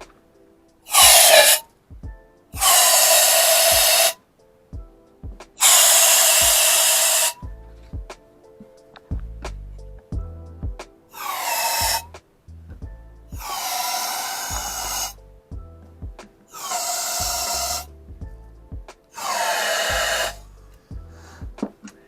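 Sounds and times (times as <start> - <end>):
instrumental beat: 0.0 - 22.0
compressed air hissing: 0.9 - 1.7, 2.6 - 4.2, 5.6 - 7.4, 11.2 - 12.1, 13.4 - 15.2, 16.5 - 17.9, 19.1 - 21.4.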